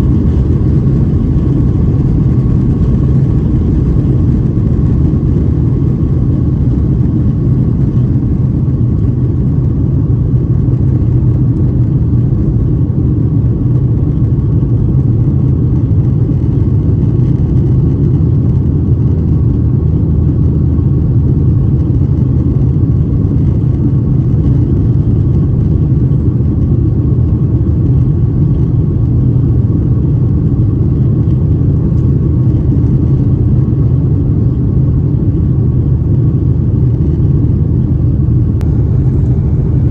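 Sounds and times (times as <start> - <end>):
rushing air: 0.0 - 9.7, 36.5 - 39.9
faint steady hum: 0.0 - 39.9
jet engines rumbling: 0.0 - 39.9.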